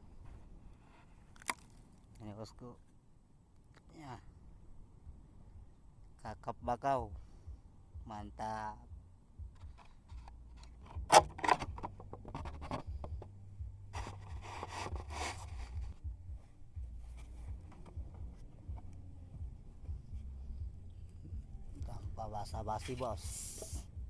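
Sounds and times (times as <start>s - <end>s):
steady low rumble: 0.0s - 24.0s
handling scraping and rubbing: 9.6s - 13.3s, 13.9s - 16.0s.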